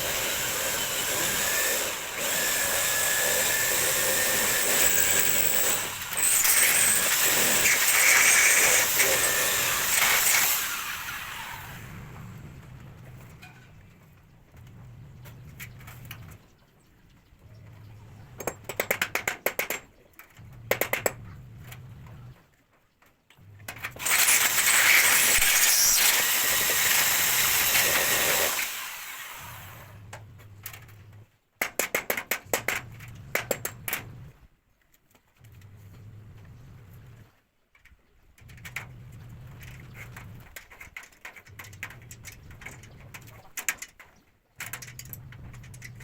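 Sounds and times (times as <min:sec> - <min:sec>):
power drill boring: 0:00.0 - 0:11.9, 0:24.0 - 0:30.0.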